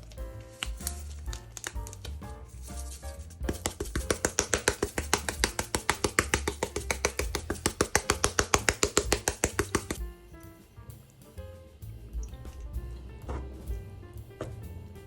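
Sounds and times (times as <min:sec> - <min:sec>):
background music with bass line: 0:00.0 - 0:15.0
fast sharp taps: 0:03.4 - 0:10.0.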